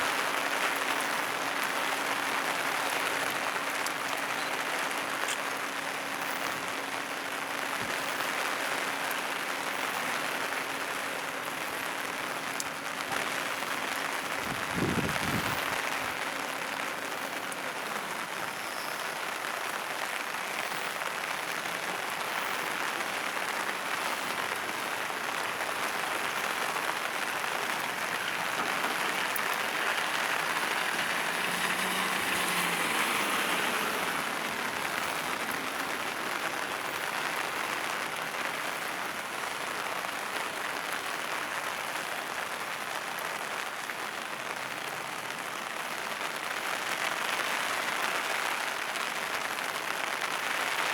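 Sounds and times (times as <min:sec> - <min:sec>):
train wheels rushing on track: 0:28.1 - 0:34.8.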